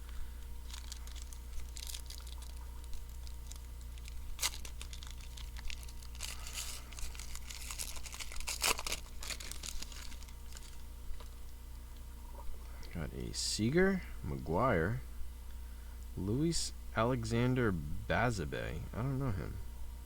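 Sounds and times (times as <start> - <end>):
plastic wrapper tearing and crinkling: 0.6 - 11.3.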